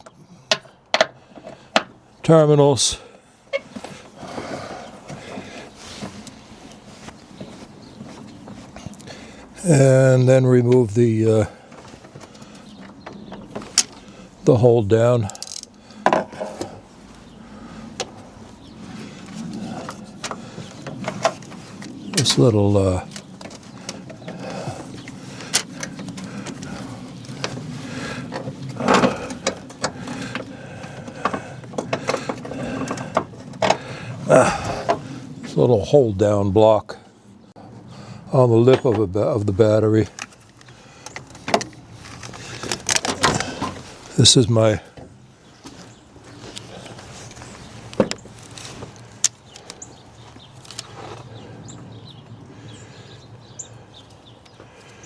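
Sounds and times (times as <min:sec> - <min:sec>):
rustling: 0:03.6 - 0:09.4, 0:15.1 - 0:35.3, 0:40.1 - 0:44.2, 0:45.4 - 0:51.3
hand tools clinking on metal: 0:15.0 - 0:16.8.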